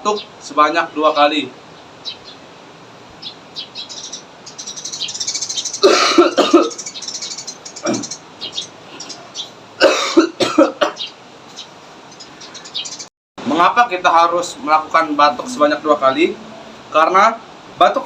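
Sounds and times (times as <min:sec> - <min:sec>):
man coughing: 0:05.8 - 0:06.8, 0:09.8 - 0:11.0.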